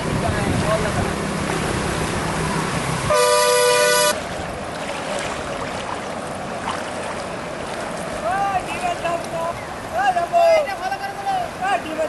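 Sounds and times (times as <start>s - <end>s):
outdoor background noise: 0.0s - 12.0s
vehicle horn blast: 3.1s - 4.2s.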